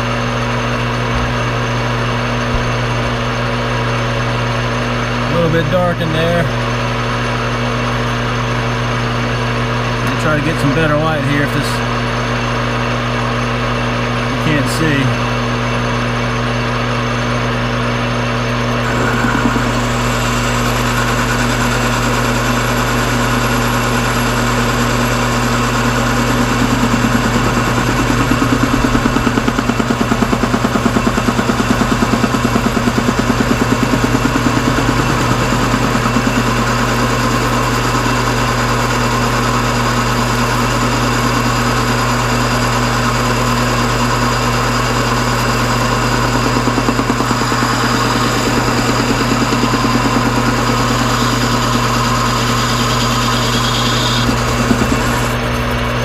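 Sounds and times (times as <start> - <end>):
metal lathe running: 0.0 - 56.0
boring tool cutting metal: 18.7 - 56.0.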